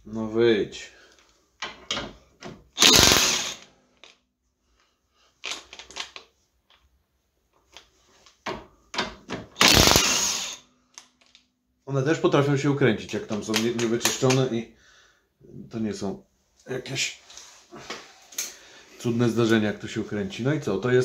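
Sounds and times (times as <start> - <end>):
impact wrench bursts: 2.8 - 3.7, 9.6 - 10.6.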